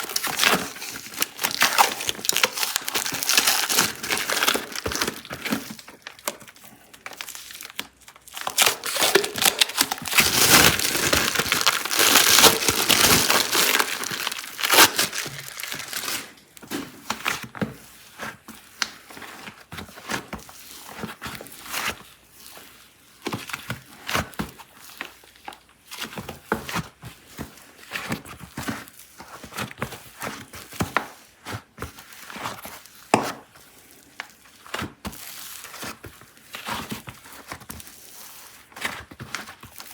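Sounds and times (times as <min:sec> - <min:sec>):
packaging crinkling and tearing: 0:00.0 - 0:16.7.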